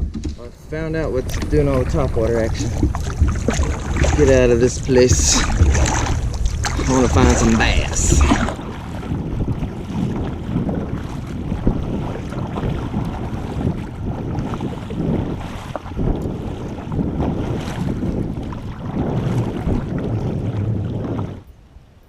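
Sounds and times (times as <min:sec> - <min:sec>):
water sloshing around kayak: 0:00.0 - 0:21.5
wind buffeting microphone: 0:00.0 - 0:22.0.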